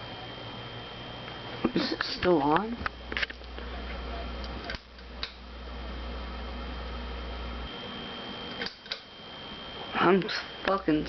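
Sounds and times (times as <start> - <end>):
ceiling fan motor humming: 0.0 - 11.0.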